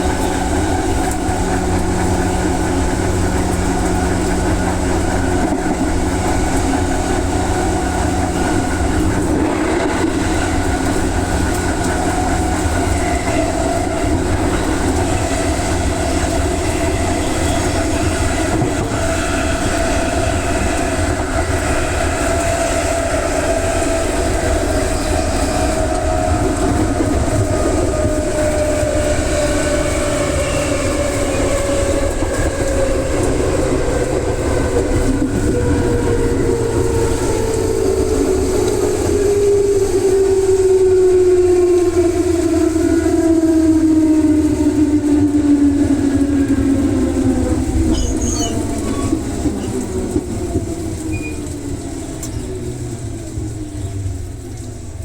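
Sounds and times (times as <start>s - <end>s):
train rumble with wheel clatter: 0.0s - 55.0s
train motor whine falling in pitch: 47.2s - 52.6s.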